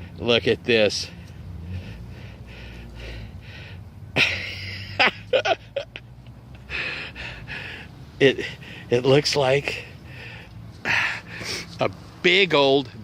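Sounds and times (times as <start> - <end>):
man breathing out: 1.6 - 4.0, 6.6 - 8.9.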